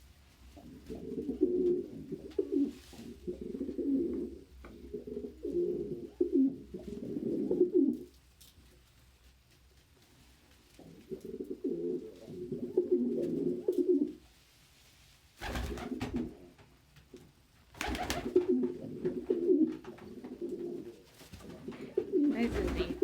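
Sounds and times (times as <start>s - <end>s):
pigeons cooing: 0.6s - 8.1s, 10.8s - 14.2s, 17.8s - 23.0s.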